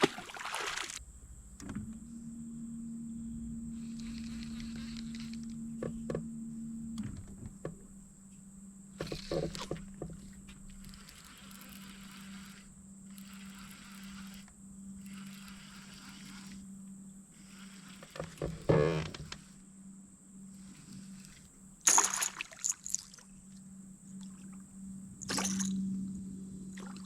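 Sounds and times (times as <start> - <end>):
trolling motor humming: 1.0 - 27.0
knocks and clicks against boat: 1.6 - 2.1, 5.3 - 10.8.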